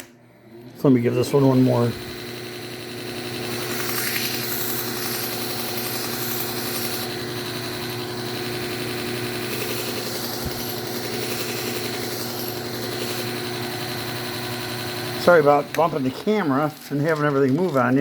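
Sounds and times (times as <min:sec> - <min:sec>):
belt sharpener motor running: 0:00.0 - 0:18.0.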